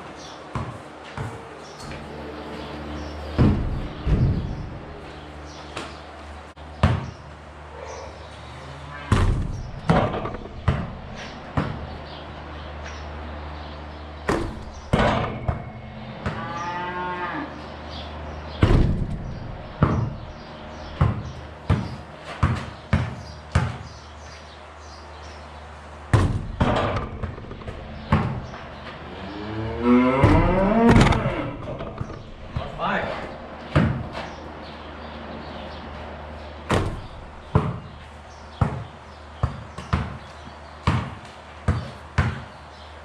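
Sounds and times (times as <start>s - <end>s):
basketball bouncing on hard floor: 6.8s - 7.2s, 9.1s - 10.9s, 14.3s - 16.4s, 19.8s - 20.2s, 21.0s - 24.0s, 26.1s - 28.6s, 36.7s - 37.9s, 38.6s - 42.5s
cow mooing: 8.4s - 9.2s, 16.2s - 17.7s, 29.1s - 32.5s.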